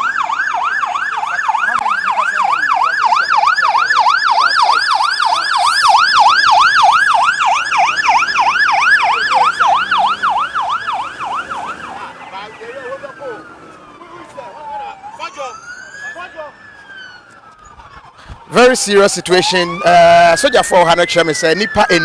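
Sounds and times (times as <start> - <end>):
siren yelping: 0.0 - 22.0
siren falling tone: 14.9 - 22.0.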